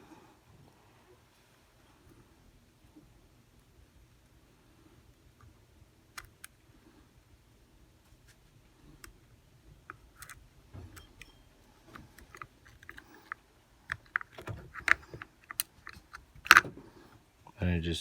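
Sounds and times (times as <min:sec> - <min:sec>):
small metal parts clicking: 0:12.1 - 0:16.7.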